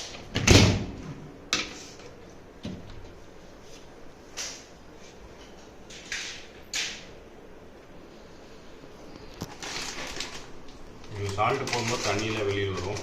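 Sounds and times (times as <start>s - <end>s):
scraping rustling handling sounds: 9.2s - 13.0s.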